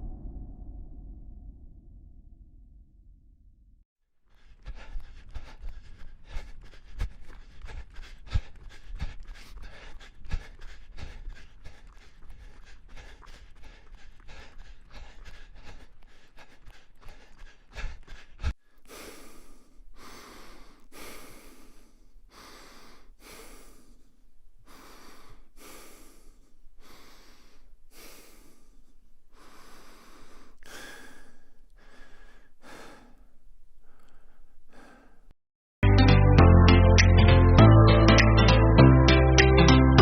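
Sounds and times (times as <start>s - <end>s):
person breathing heavily: 4.3s - 35.4s.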